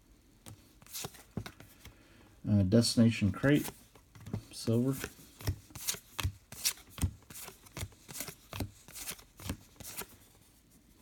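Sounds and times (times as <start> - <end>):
trading cards clicking: 3.5 - 10.2.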